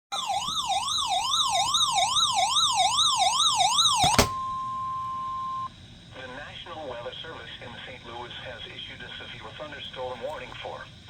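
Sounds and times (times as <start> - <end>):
warbling electronic siren tone: 0.1 - 5.7
steady alarm tone: 0.1 - 5.8.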